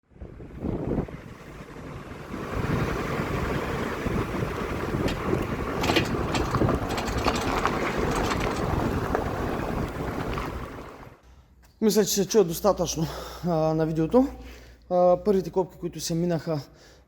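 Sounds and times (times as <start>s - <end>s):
road and wind noise: 0.0s - 11.2s
brake caliper rattling: 4.6s - 10.6s.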